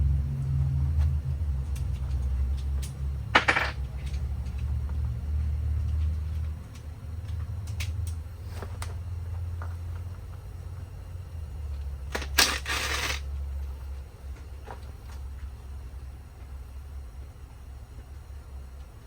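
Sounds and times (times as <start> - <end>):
metal tools clinking and knocking: 3.4 - 3.8.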